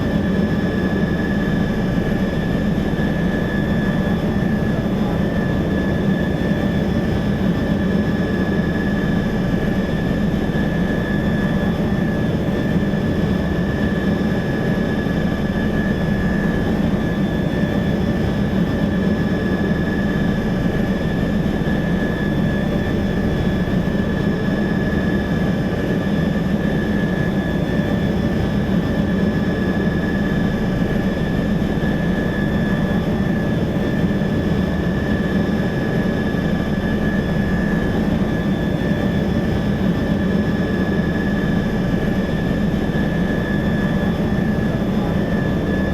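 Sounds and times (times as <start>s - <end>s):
constant high whine: 0.0s - 45.9s
helicopter engine and rotor drone: 0.0s - 45.9s.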